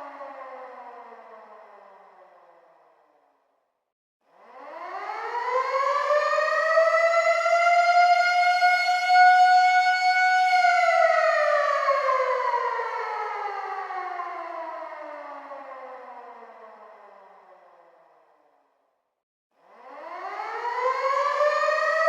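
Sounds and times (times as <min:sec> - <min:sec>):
air raid siren wailing: 0:04.7 - 0:16.5, 0:19.8 - 0:22.0.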